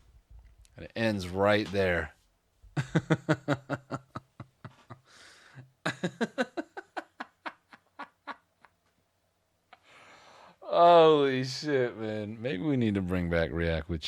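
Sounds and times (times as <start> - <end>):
man laughing hard: 2.8 - 5.1, 5.8 - 8.7
gasping in-breath: 5.0 - 5.7, 9.8 - 10.6.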